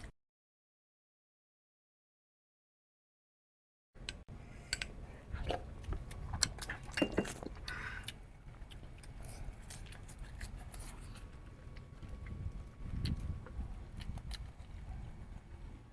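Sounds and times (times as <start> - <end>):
chewing crunches: 5.5 - 15.4
utensils clinking on dishes: 6.9 - 7.5.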